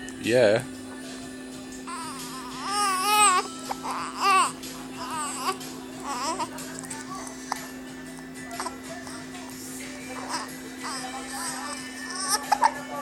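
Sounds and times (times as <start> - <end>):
baby fussing and crying: 1.8 - 13.0.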